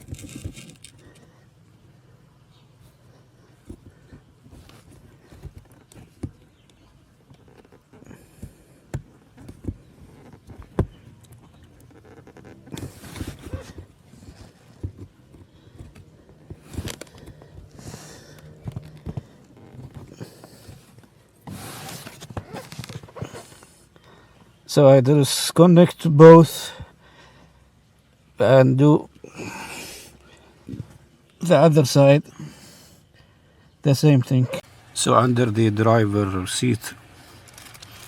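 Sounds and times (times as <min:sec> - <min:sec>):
rustling and scraping: 0:00.0 - 0:01.6, 0:02.5 - 0:24.6, 0:36.1 - 0:38.0.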